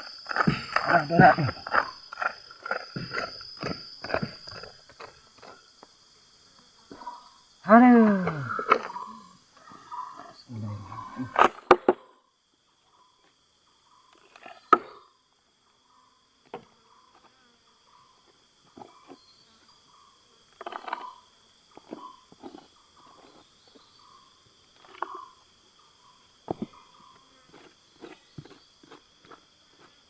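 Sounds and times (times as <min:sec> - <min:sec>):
digging knocks and scrapes: 0:00.0 - 0:05.7, 0:20.6 - 0:23.5
insects droning: 0:00.0 - 0:30.0.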